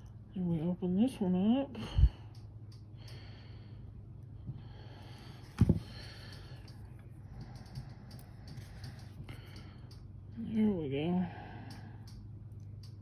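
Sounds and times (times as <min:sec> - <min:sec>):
person breathing heavily: 0:01.8 - 0:10.1.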